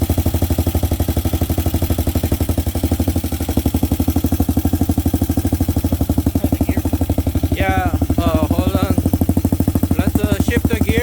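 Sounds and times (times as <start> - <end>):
dirt bike engine idling: 0.0 - 11.0.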